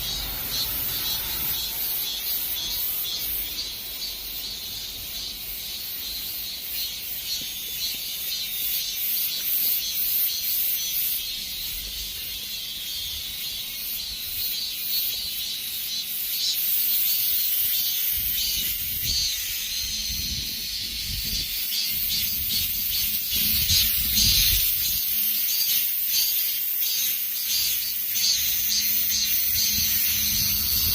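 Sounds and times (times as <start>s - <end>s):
cicadas buzzing: 0.0s - 30.9s.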